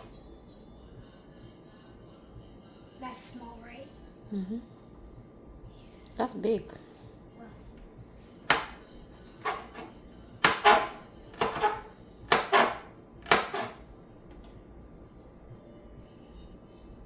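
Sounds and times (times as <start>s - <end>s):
knife chopping on cutting board: 8.4s - 8.8s, 9.4s - 9.8s, 10.4s - 13.8s.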